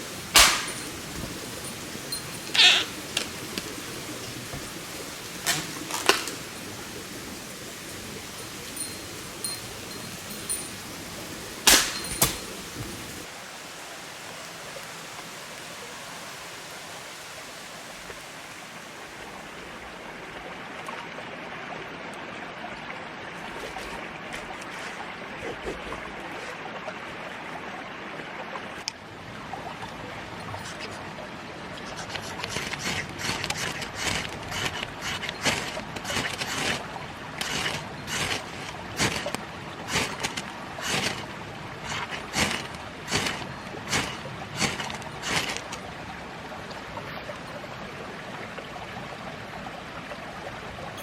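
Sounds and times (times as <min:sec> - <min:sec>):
campfire popping and crackling: 0:00.0 - 0:13.3, 0:32.7 - 0:45.8
campfire hissing: 0:00.0 - 0:20.2, 0:32.3 - 0:45.9.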